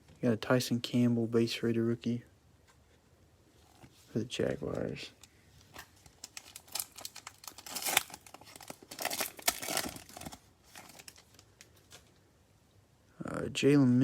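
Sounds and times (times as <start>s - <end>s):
plastic wrapper crinkling and tearing: 5.2s - 12.2s.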